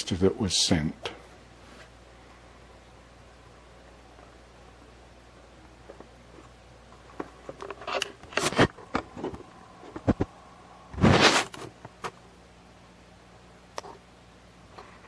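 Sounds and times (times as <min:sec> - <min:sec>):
handling clicks and scrapes: 0:05.8 - 0:10.3, 0:11.0 - 0:12.2.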